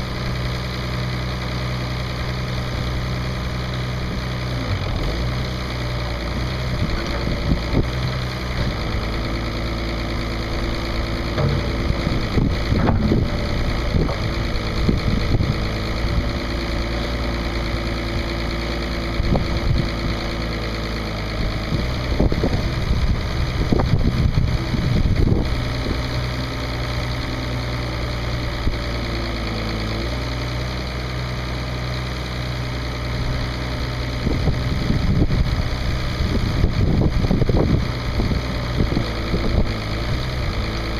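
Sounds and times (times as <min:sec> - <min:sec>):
diesel engine running: 0:00.0 - 0:40.9
clunks and rattles: 0:05.8 - 0:20.6.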